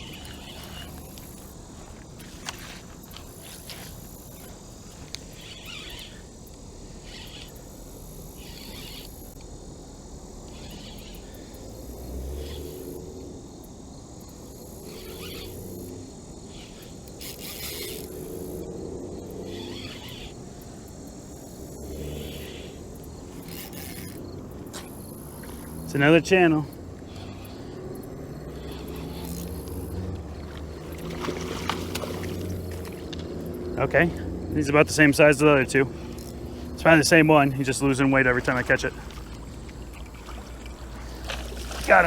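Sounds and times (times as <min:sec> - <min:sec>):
insect rasping call: 0:00.0 - 0:42.0
insects buzzing: 0:00.0 - 0:42.0
low rumbling: 0:24.1 - 0:42.0.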